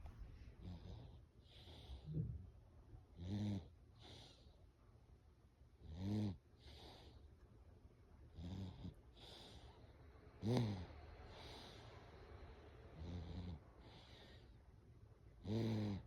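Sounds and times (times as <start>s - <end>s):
loud snoring: 10.4s - 10.9s, 15.4s - 16.0s.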